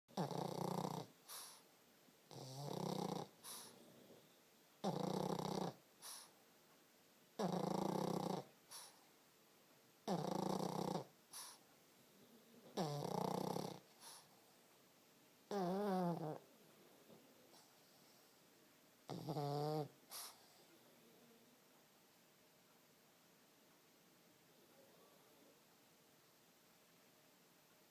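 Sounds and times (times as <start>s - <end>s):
dog snoring: 0.1s - 1.6s, 2.3s - 6.3s, 7.4s - 9.0s, 10.0s - 11.6s, 12.6s - 14.4s, 15.5s - 16.5s, 19.0s - 20.7s.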